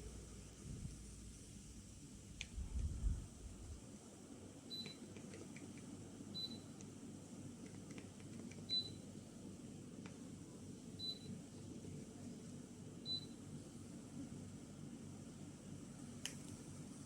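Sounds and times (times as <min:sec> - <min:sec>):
air conditioner humming: 0:00.0 - 0:17.0
air conditioner beeps: 0:04.6 - 0:05.1, 0:06.2 - 0:06.8, 0:08.6 - 0:09.1, 0:10.9 - 0:11.6, 0:13.0 - 0:13.6.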